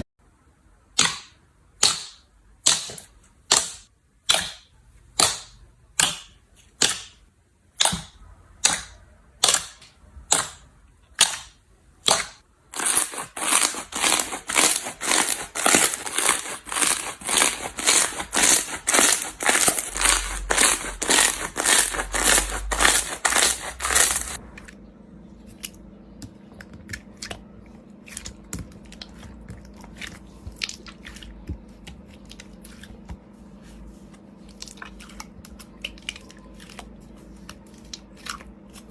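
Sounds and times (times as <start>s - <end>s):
slime popping and crackling: 11.2s - 24.4s.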